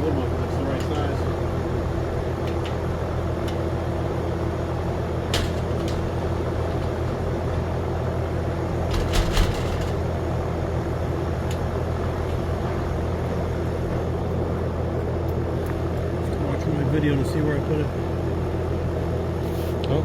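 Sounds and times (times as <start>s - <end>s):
low machine hum: 0.0s - 20.0s
metal lock parts clicking: 5.3s - 7.2s.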